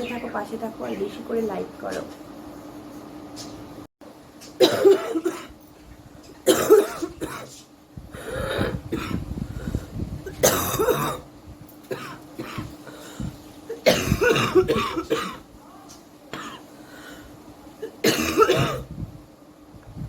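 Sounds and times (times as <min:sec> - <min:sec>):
woman coughing: 0:04.6 - 0:05.5, 0:06.4 - 0:07.5, 0:08.4 - 0:09.2, 0:10.3 - 0:11.2, 0:11.9 - 0:12.7, 0:13.7 - 0:15.4, 0:16.3 - 0:16.6, 0:17.8 - 0:18.9.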